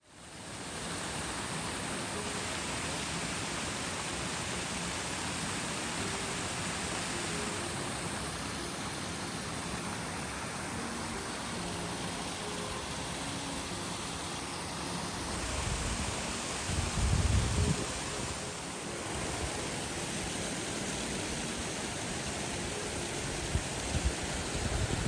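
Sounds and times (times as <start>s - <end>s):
waterfall roaring: 0.1s - 25.0s.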